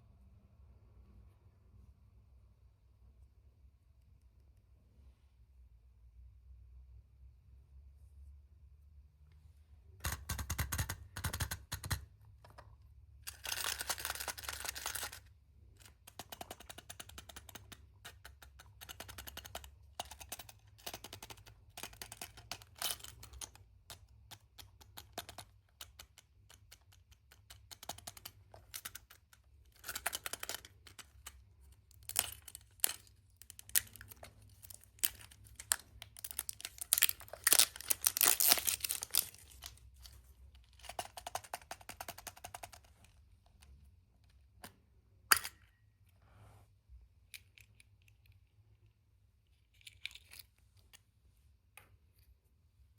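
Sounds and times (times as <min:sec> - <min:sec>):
small clicks and taps: 0:15.8 - 0:45.7
wrapper tearing and crinkling: 0:34.9 - 0:39.6.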